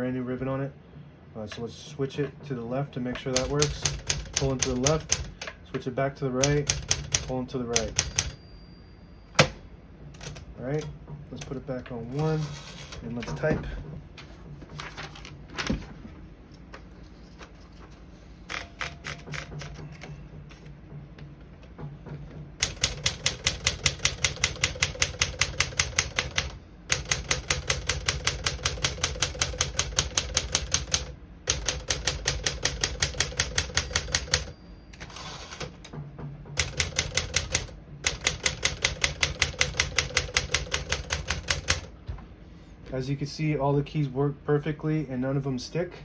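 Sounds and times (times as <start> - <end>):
manual typewriter typing: 3.1 - 5.6, 6.4 - 8.4, 10.2 - 13.5, 18.5 - 20.2, 22.6 - 35.9, 36.6 - 41.9.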